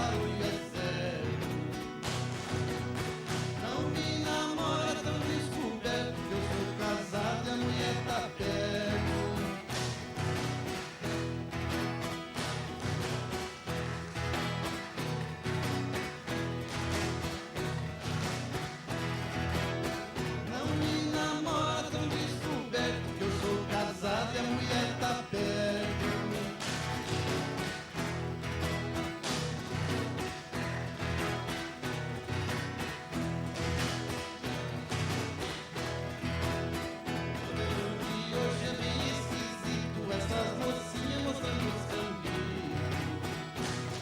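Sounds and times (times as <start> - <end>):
person singing: 0.0 - 1.6, 3.6 - 9.9, 20.4 - 26.8, 37.3 - 43.3
song with beat and guitar: 0.0 - 44.0.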